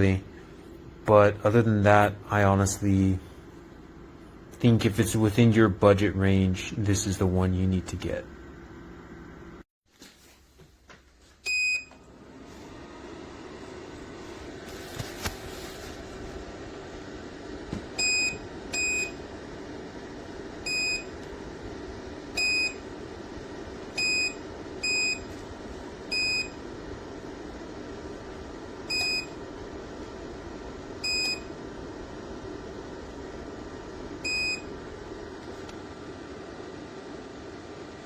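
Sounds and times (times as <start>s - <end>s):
heater fan running: 0.0s - 38.0s
heater beeping: 11.4s - 38.0s.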